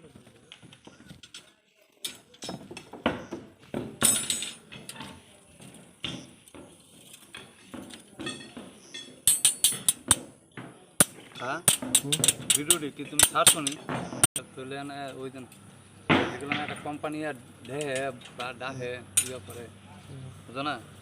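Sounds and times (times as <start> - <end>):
steel bars knocking and clinking: 1.2 - 3.1, 3.8 - 5.2, 6.0 - 14.3, 16.1 - 18.6, 19.2 - 19.7.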